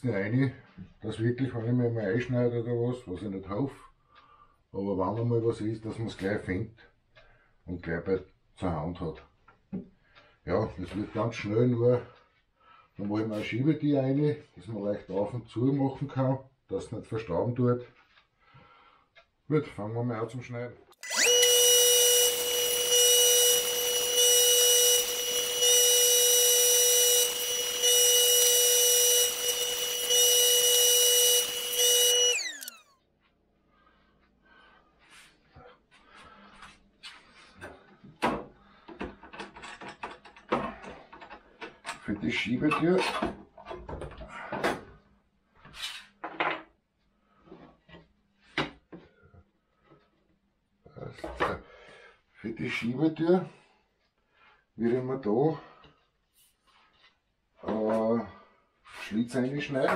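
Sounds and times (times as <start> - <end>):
electric saw cutting wood: 21.0 - 32.8.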